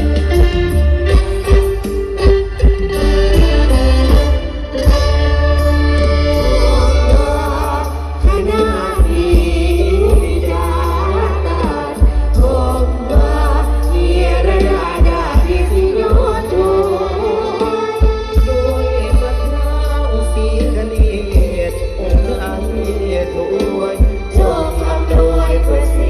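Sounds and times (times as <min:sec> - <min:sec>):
drum hits: 0:00.0 - 0:05.4
heavy bass line: 0:00.0 - 0:23.4
person singing: 0:06.0 - 0:26.0.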